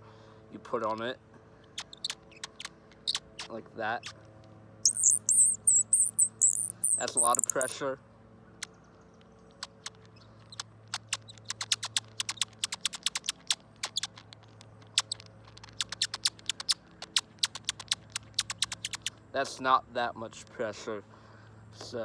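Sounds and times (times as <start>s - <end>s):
bird caller squeaky chirps: 4.9s - 7.8s.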